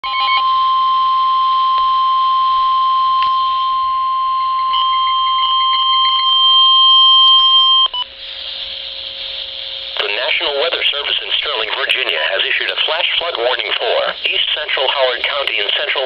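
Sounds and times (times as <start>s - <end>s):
steady alarm tone: 0.0s - 16.0s.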